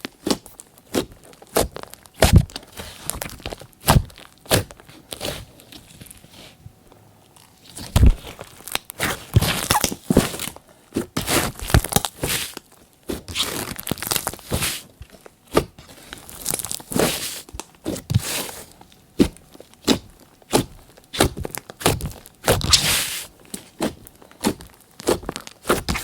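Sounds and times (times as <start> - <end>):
hands squishing slime: 15.5 - 26.0.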